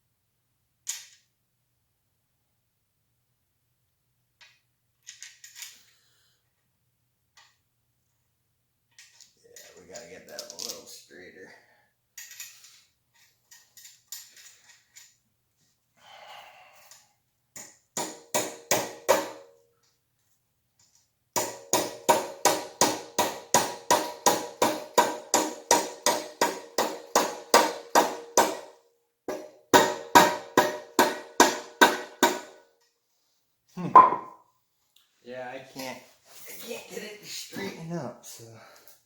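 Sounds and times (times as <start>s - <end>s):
hammer striking metal: 18.0s - 19.5s, 21.4s - 28.7s, 29.3s - 32.6s, 34.0s - 34.4s.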